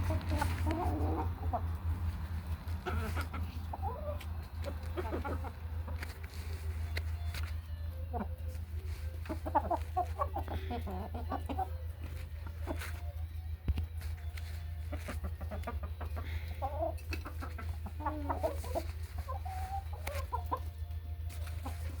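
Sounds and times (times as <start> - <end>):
chickens clucking: 0.0 - 22.0.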